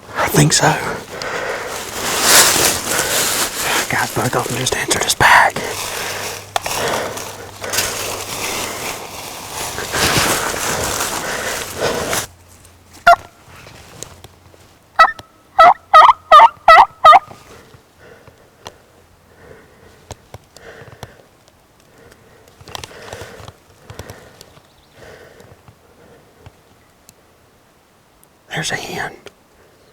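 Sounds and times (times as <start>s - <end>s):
turkey yelps: 13.0s - 13.3s, 15.0s - 17.3s.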